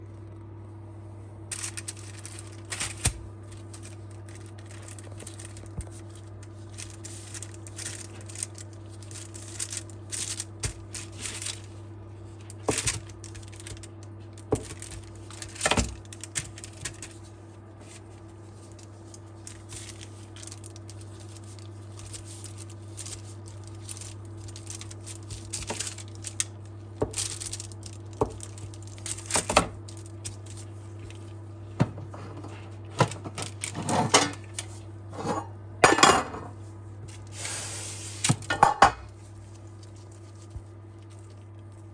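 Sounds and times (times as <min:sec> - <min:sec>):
steady low hum: 0:00.0 - 0:41.9
packaging rustling: 0:01.5 - 0:31.4, 0:33.0 - 0:33.8.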